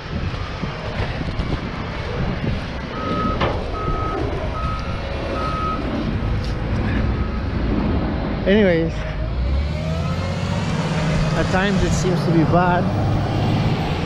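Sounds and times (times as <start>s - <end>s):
traffic rumble: 0.0s - 14.0s
wind: 0.0s - 14.0s
vehicle reversing alarm beeping: 2.9s - 6.1s, 6.8s - 7.6s.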